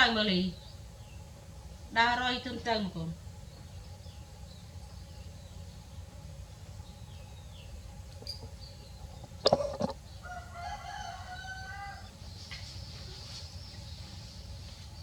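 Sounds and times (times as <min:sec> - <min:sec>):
rooster crowing: 0:09.4 - 0:12.2.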